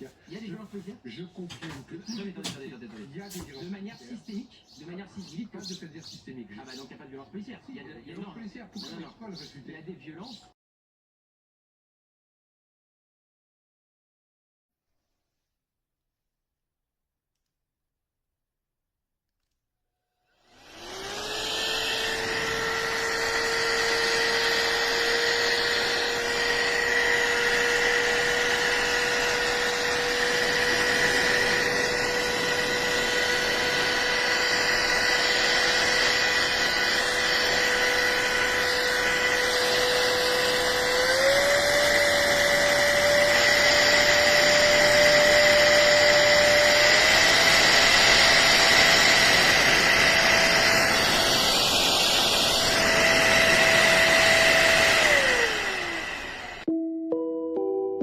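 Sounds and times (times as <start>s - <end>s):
electric air duster whining: 1.5s - 4.1s, 20.4s - 56.7s.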